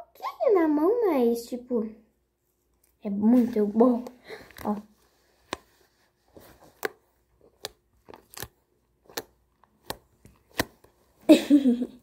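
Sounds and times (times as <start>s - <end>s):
slime squeezed with clicking pops: 6.7s - 10.8s.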